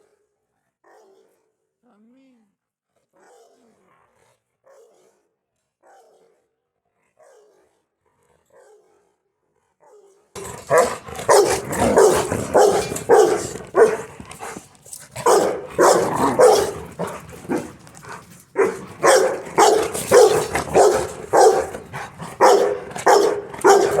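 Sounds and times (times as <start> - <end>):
dog barking: 0.9 - 1.3, 3.2 - 3.7, 4.7 - 6.6, 7.2 - 7.7, 8.5 - 9.1, 9.8 - 24.0.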